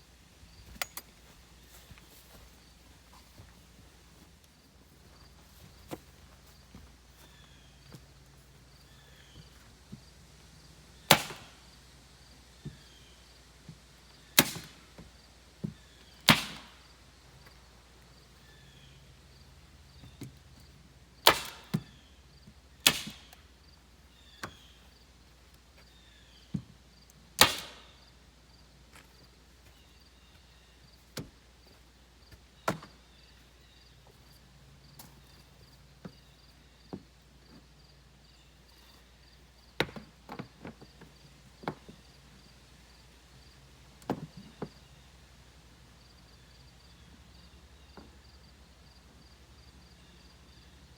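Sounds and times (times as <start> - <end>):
hand tool striking wood: 16.3 - 16.7, 21.2 - 21.9, 22.8 - 23.3, 27.4 - 27.8.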